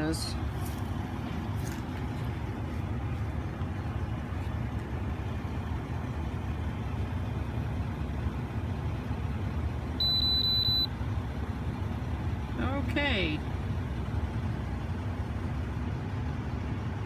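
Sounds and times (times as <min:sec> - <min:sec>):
truck engine rumble: 0:00.0 - 0:17.0
high electronic beeps: 0:10.0 - 0:10.9.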